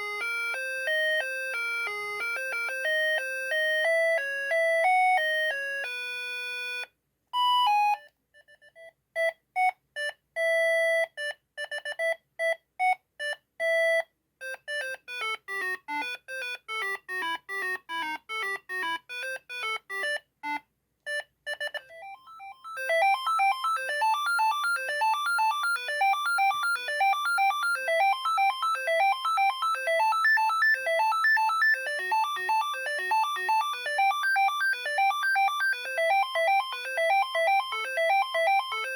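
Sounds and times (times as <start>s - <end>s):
electronic phone ringtone beeps: 9.2s - 38.9s.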